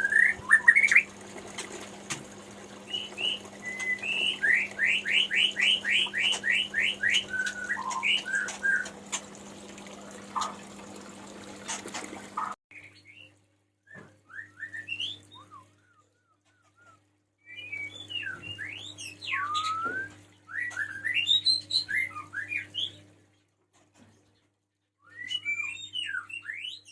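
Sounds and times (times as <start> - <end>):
bird singing whistled notes: 13.9 - 23.0, 25.0 - 26.9.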